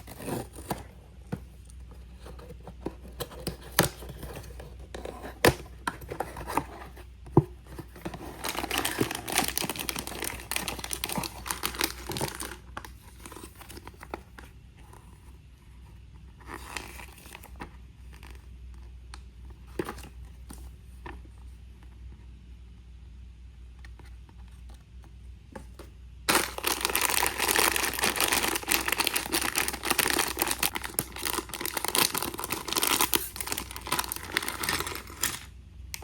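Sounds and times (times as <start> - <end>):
packaging crinkling and tearing: 8.1 - 14.1, 26.3 - 36.0.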